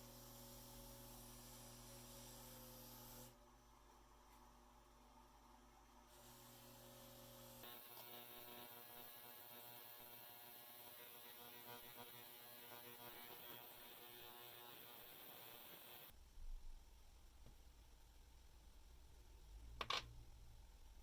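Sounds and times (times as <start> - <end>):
ultrasonic cleaner humming and hissing: 6.2 - 16.1.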